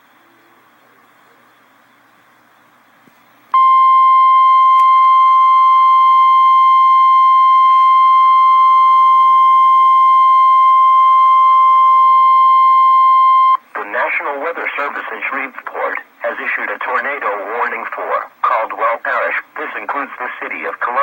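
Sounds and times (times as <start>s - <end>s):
faint radio hiss: 0.0s - 3.6s, 13.5s - 21.0s.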